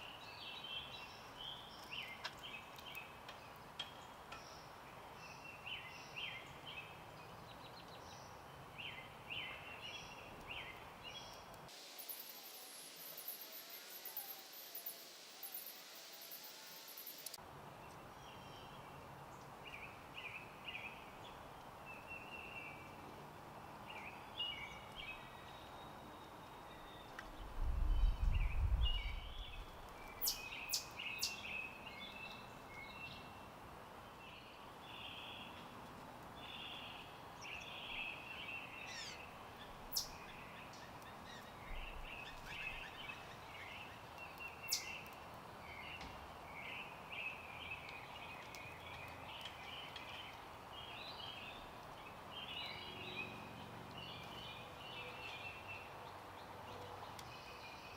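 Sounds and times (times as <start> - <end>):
small birds chirping: 0.0 - 33.5, 34.1 - 57.9
outdoor background hiss: 0.0 - 57.9
low rumble: 27.4 - 29.7.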